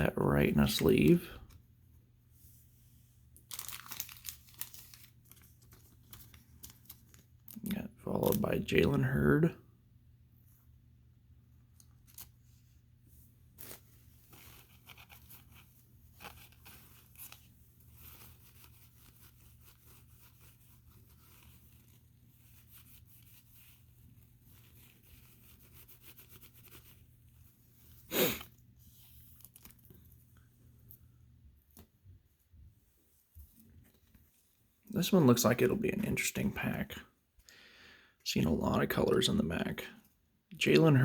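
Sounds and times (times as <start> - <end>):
wrapper being torn open: 3.4 - 7.6
cards and wrappers crinkling: 3.4 - 8.8, 13.5 - 26.9, 28.1 - 31.0.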